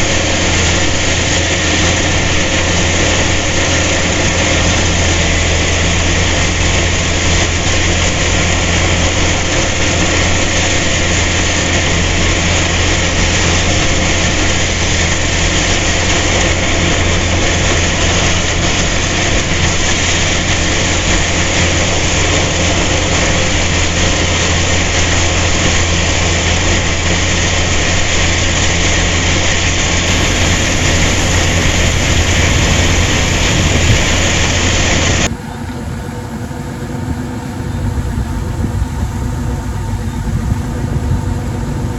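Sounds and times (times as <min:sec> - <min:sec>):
harvesting machine engine hum: 0:00.0 - 0:41.9.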